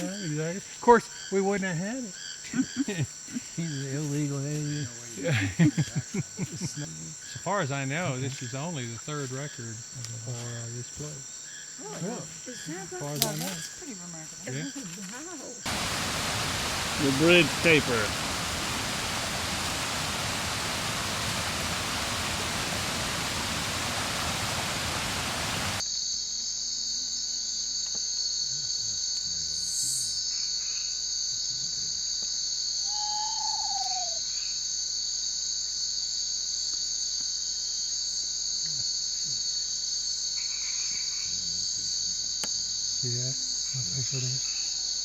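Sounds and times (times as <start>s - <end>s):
crickets trilling: 0.0s - 45.0s
steady rushing hiss: 15.6s - 25.8s
falling whistled note: 32.9s - 34.2s.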